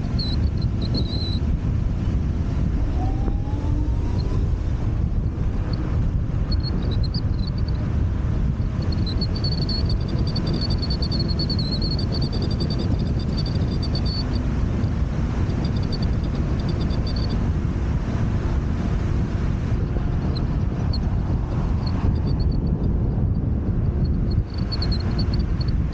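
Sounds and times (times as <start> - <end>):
road noise: 0.0 - 25.9
wind on microphone: 0.0 - 25.9.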